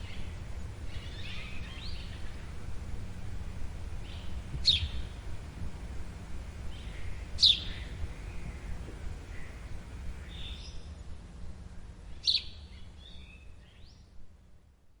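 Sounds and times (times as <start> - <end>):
bird falling chirp: 0.0 - 10.5
faint bird calls: 0.0 - 10.6
steady low rumble: 0.0 - 10.6.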